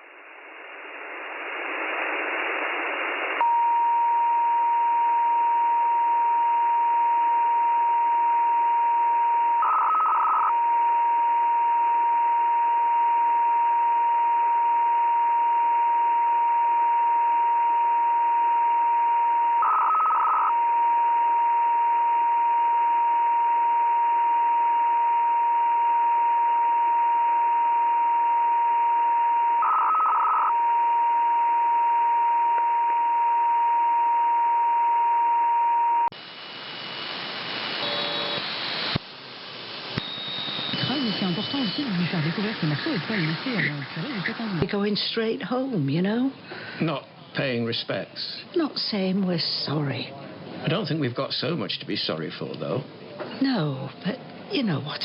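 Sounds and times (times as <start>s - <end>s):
band-limited radio hiss: 0.0s - 3.5s, 9.6s - 10.5s, 36.1s - 55.0s
radio carrier whistle: 3.4s - 36.1s, 37.7s - 39.0s, 39.8s - 44.6s.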